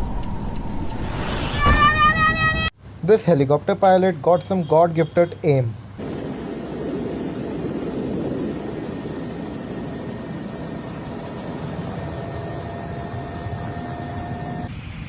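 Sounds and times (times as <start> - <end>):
helicopter rotor and engine: 6.0 - 14.7
thin steady whine: 6.0 - 14.7.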